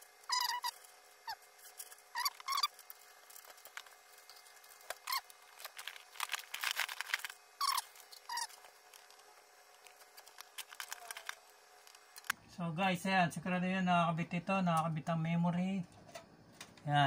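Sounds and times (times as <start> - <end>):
plastic computer parts squeaking and clicking: 0.0 - 12.4.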